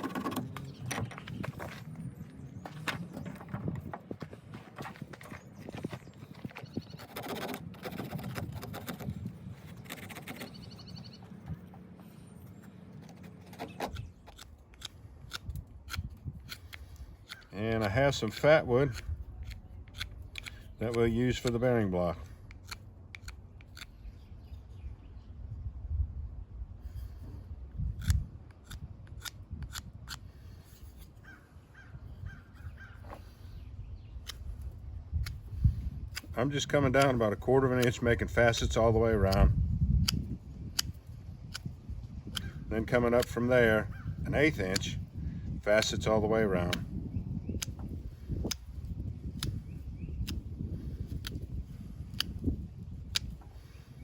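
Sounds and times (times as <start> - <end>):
knife blade cutting dry wood: 6.8 - 10.8, 13.0 - 24.0, 27.8 - 31.4, 34.2 - 43.5
knife scraping wooden branch: 6.8 - 10.8.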